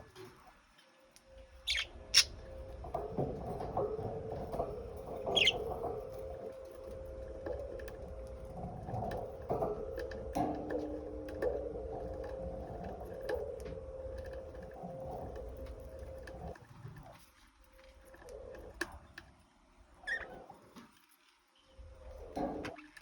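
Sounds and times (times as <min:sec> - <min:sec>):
lovebirds calling and clicking: 0:01.6 - 0:02.6, 0:04.4 - 0:06.4, 0:20.0 - 0:20.5
sharp high bird chirp: 0:01.7 - 0:02.3.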